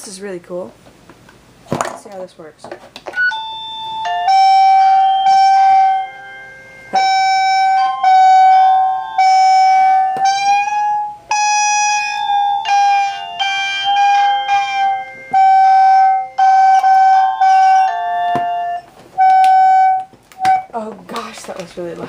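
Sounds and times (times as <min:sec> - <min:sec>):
electronic doorbell chime melody: 0:03.2 - 0:20.0.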